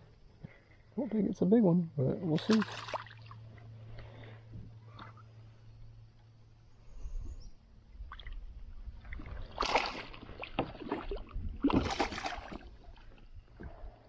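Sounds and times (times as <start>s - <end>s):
fish splashing at surface: 9.3s - 12.7s.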